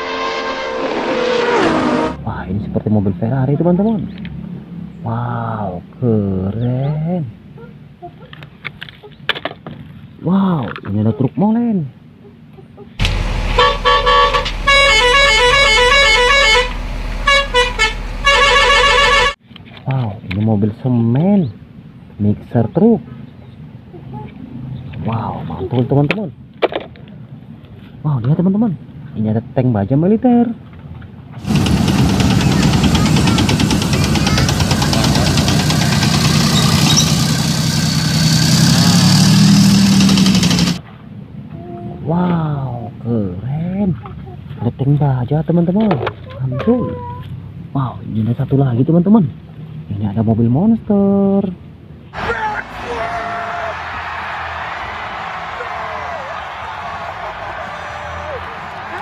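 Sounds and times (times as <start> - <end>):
multi-tone musical horn tune: 0.0 - 2.2, 13.1 - 19.4
heavy engine idling with knock: 13.0 - 15.9, 31.4 - 40.8.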